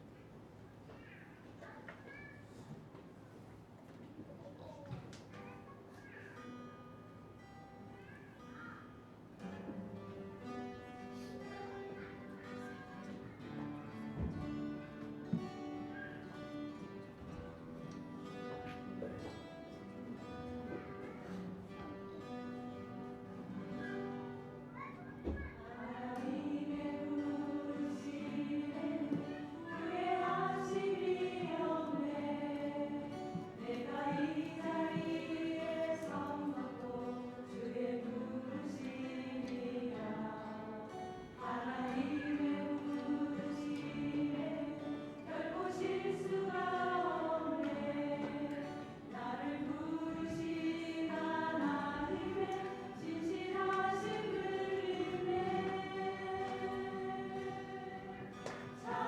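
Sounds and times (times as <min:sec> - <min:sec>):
church choir singing a hymn: 0:25.2 - 0:59.0.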